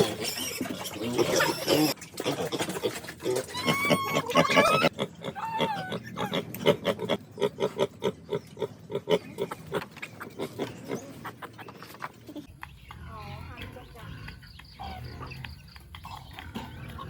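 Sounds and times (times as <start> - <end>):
pig squealing: 0.0 - 9.6
pigs grunting: 0.0 - 17.0.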